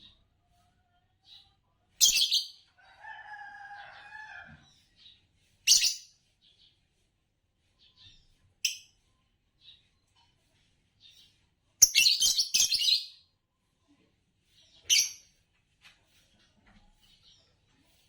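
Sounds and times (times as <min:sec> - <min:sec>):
lovebirds chirping: 0:01.2 - 0:02.6, 0:04.3 - 0:06.8, 0:11.0 - 0:13.3, 0:14.5 - 0:15.3.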